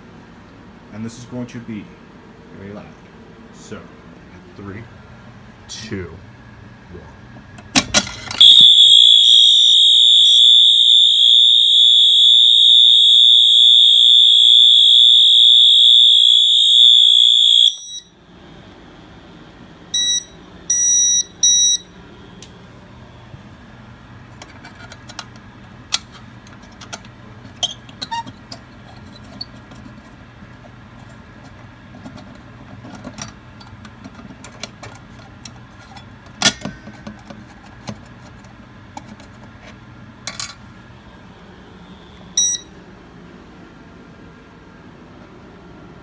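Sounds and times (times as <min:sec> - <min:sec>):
short beeps: 0:08.4 - 0:18.1, 0:20.0 - 0:22.0, 0:42.4 - 0:42.7
fire alarm horn steady tone: 0:08.4 - 0:18.2, 0:19.9 - 0:22.0, 0:41.7 - 0:42.8.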